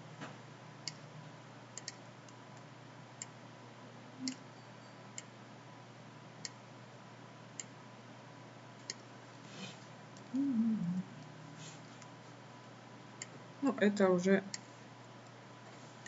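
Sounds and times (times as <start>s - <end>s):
faint steady hum: 0.0s - 16.0s
computer mouse clicking: 1.8s - 2.4s.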